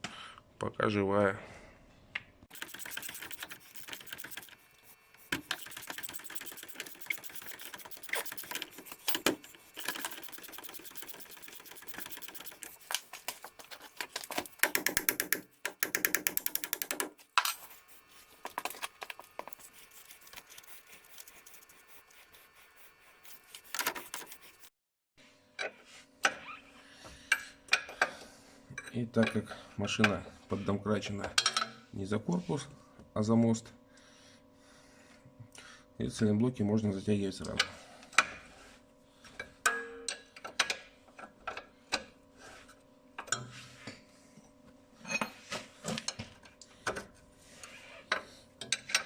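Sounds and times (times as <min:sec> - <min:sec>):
ratchet wrench clicking: 0:02.5 - 0:04.6, 0:05.4 - 0:12.6.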